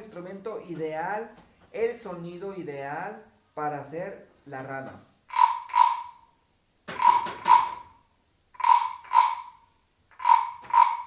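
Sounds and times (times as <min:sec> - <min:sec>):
wooden frog guiro rasping: 0:05.3 - 0:06.2, 0:06.9 - 0:07.9, 0:08.6 - 0:11.0.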